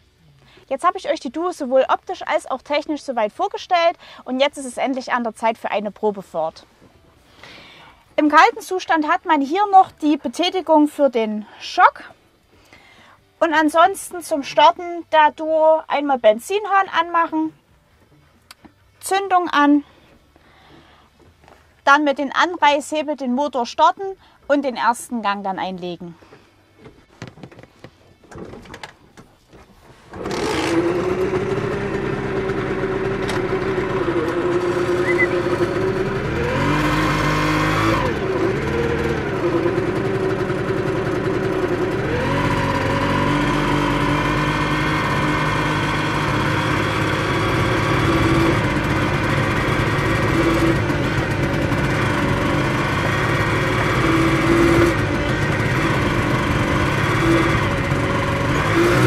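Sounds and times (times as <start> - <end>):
two-stroke engine running: 30.1 - 59.0.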